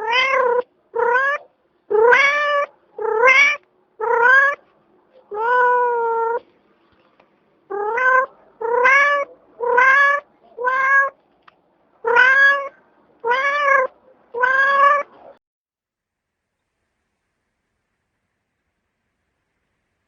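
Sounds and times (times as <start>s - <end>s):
cat meowing: 0.0s - 4.6s, 5.3s - 6.4s, 7.7s - 11.2s, 12.0s - 15.4s.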